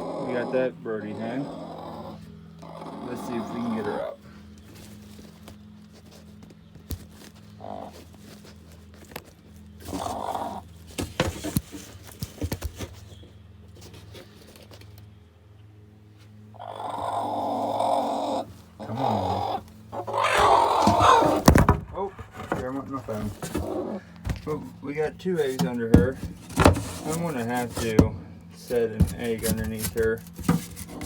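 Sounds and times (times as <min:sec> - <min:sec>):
hen growling and squawking: 0:00.0 - 0:04.2, 0:07.6 - 0:08.0, 0:09.8 - 0:10.6, 0:16.6 - 0:24.2
knocks and rustles of handling: 0:04.5 - 0:15.2, 0:20.4 - 0:31.0.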